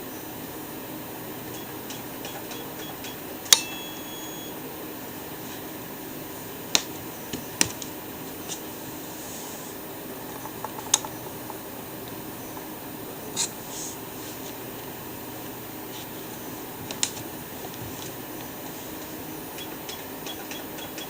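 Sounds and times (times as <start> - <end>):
fan-like hum: 0.0 - 21.0
keypad button beeps: 1.6 - 4.5
sharp clicks: 6.7 - 7.9, 10.2 - 12.7, 14.7 - 17.8.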